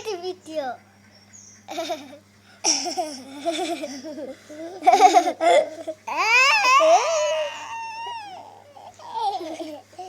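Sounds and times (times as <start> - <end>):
child laughing: 1.7 - 10.0
child squealing: 6.1 - 9.2
child babbling: 6.1 - 10.0.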